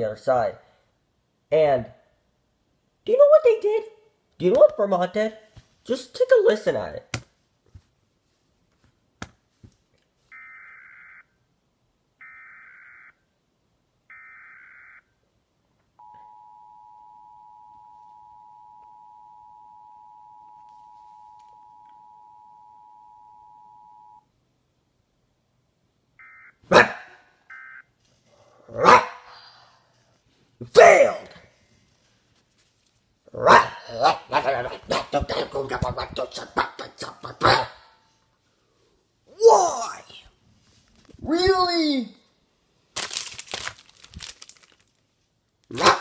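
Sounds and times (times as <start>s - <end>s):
two-tone attention signal: 16.0s - 24.2s
bark-like outbursts: 26.7s - 27.2s, 28.4s - 29.7s, 30.7s - 31.4s, 33.3s - 38.0s, 45.7s - 46.0s.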